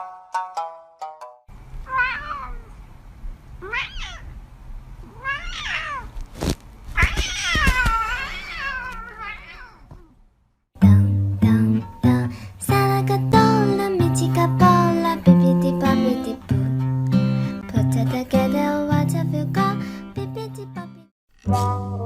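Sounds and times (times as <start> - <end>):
cat meowing: 1.8 - 2.8, 3.6 - 4.4, 5.0 - 6.2, 7.0 - 10.2
plucked-note music: 21.4 - 22.0.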